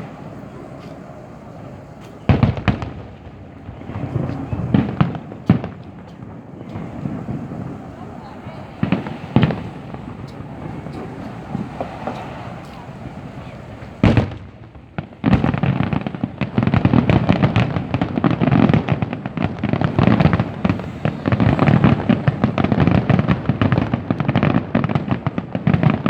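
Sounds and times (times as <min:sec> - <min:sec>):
fireworks bangs and crackling: 0:00.0 - 0:26.0.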